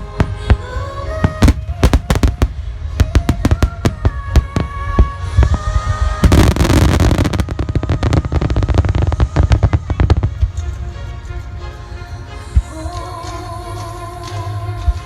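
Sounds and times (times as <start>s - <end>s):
firework shells bursting: 0.0s - 5.6s
firework crackling: 0.0s - 10.8s
music: 0.0s - 15.0s.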